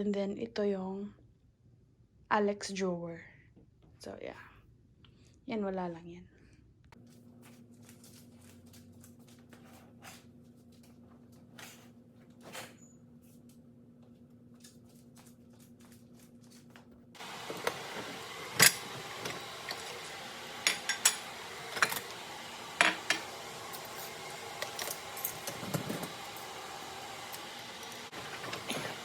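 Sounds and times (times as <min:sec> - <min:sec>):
room hum: 0:06.2 - 0:29.0.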